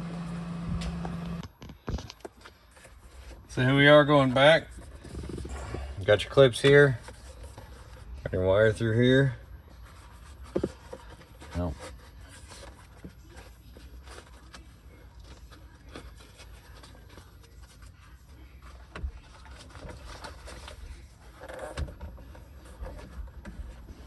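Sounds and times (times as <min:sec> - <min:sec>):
low steady hum: 0:00.0 - 0:01.5.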